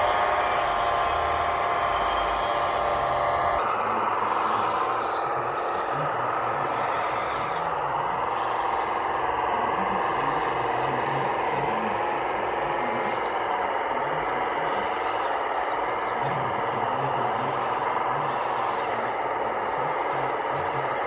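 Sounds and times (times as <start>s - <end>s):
high-pitched motor whine: 0.0s - 21.0s.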